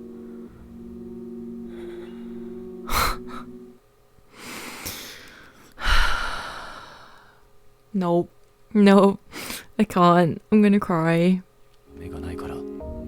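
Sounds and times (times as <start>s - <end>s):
low steady drone: 0.0s - 3.8s
woman gasping breaths: 1.7s - 3.5s, 4.3s - 7.4s.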